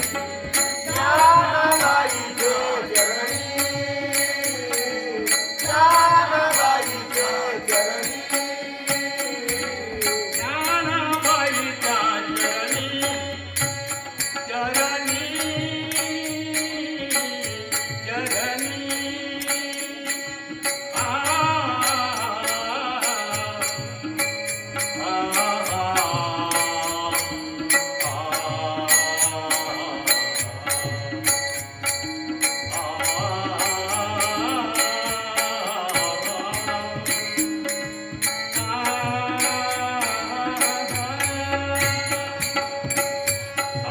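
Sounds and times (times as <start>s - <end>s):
person singing devotional song: 0.0s - 43.9s
repeating percussion beat: 0.0s - 43.9s
small hand cymbals: 0.0s - 43.9s.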